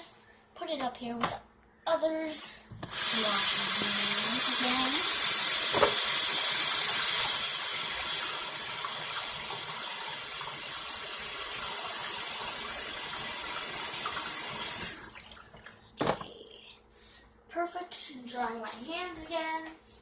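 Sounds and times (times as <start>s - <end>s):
tap running into sink: 5.6s - 6.2s.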